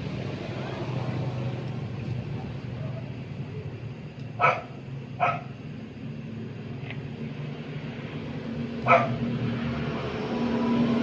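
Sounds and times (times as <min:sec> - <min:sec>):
steady low hum: 0:00.0 - 0:11.0
dog barking: 0:04.4 - 0:05.5, 0:08.8 - 0:09.2.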